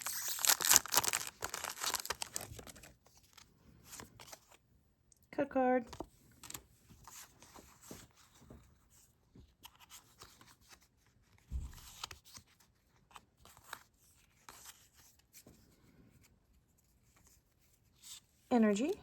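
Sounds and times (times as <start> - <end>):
cards and foil pack rustling: 0.0 - 4.6.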